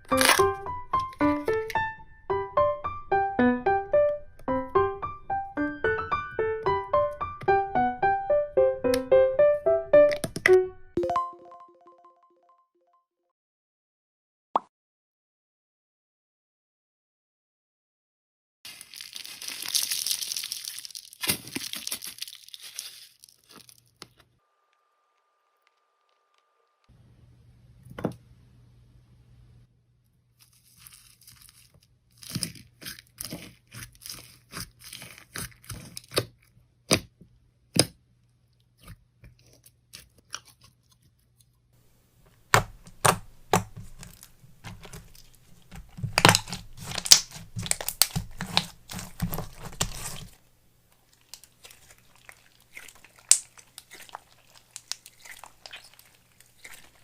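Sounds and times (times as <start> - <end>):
sticky crackling and popping: 0.0 - 1.9, 18.7 - 24.3, 42.3 - 57.0
slime squishing: 0.0 - 2.0, 18.7 - 24.2, 30.4 - 41.4, 42.4 - 50.4, 51.0 - 57.0.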